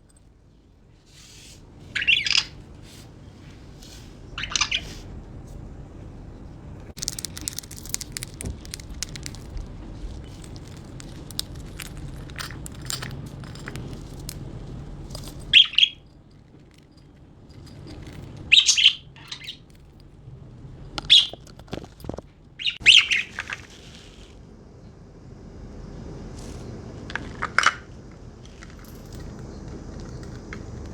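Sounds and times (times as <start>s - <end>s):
birds pecking at food clicks: 7.0s - 14.4s
loud short bird chirps: 22.6s - 23.4s.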